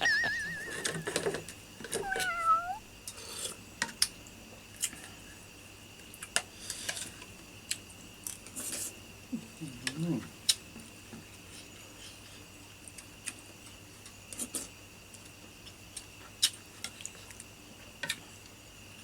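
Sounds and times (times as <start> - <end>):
short animal call: 0.0 - 1.2, 2.0 - 2.8
high-pitched hum: 0.0 - 1.4.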